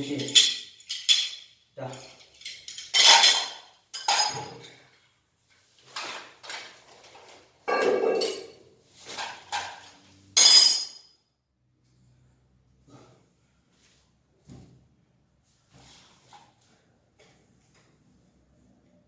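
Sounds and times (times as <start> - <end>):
metal tools clinking on hard surface: 0.0 - 4.8, 7.7 - 8.6, 9.2 - 11.2.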